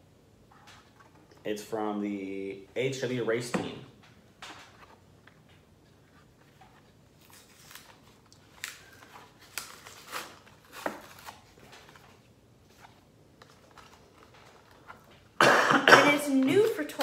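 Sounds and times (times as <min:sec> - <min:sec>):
plastic packaging crackling: 0:06.4 - 0:15.4, 0:16.2 - 0:17.0.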